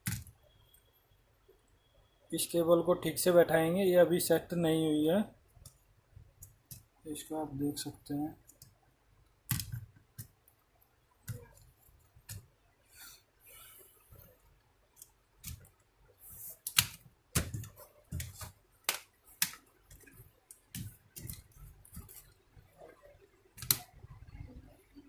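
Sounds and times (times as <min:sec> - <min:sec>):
clicks and taps of laptop parts: 0:09.5 - 0:10.4, 0:16.7 - 0:22.2.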